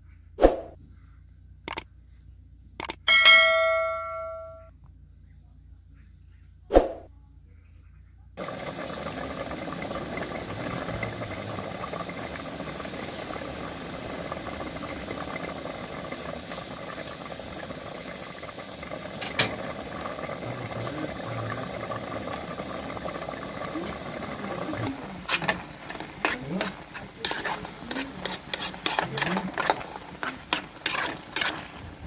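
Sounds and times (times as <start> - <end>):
sharp click: 1.7 - 1.9, 2.8 - 3.0
steady hiss: 8.4 - 32.0.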